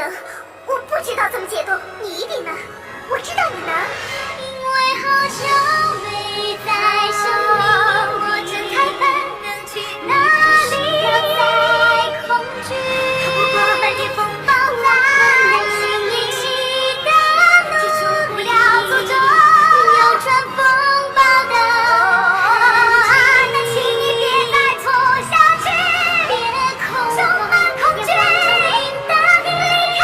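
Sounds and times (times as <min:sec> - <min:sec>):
musical backing: 0:00.0 - 0:30.0
woman singing with pitch effect: 0:03.1 - 0:30.0.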